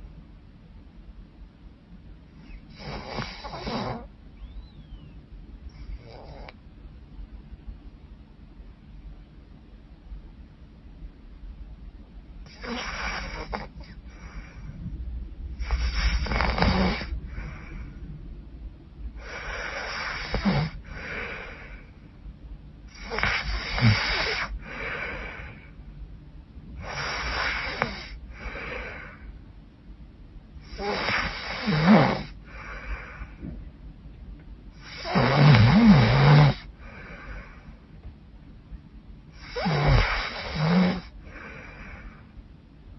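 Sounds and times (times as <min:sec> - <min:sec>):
woman snoring: 0:02.5 - 0:04.1, 0:05.8 - 0:06.6, 0:12.5 - 0:14.0, 0:15.6 - 0:17.7, 0:19.2 - 0:21.7, 0:22.9 - 0:25.7, 0:26.8 - 0:29.2, 0:30.6 - 0:32.8, 0:34.8 - 0:37.2, 0:39.4 - 0:42.0
faint breath: 0:12.4 - 0:22.3, 0:22.9 - 0:25.9, 0:26.8 - 0:29.4, 0:30.6 - 0:33.7, 0:36.6 - 0:38.1, 0:39.3 - 0:42.6.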